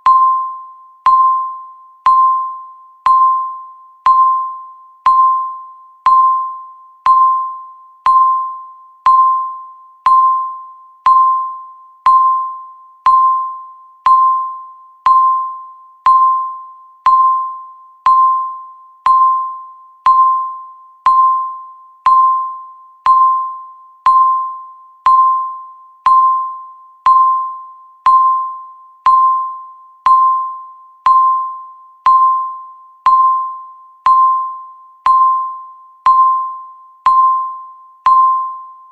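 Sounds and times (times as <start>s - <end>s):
electronic timer beeps: 0.0s - 38.9s.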